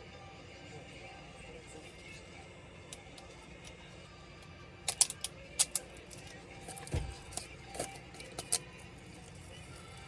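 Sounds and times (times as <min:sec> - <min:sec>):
clicks of small parts and tools: 0:04.9 - 0:08.7.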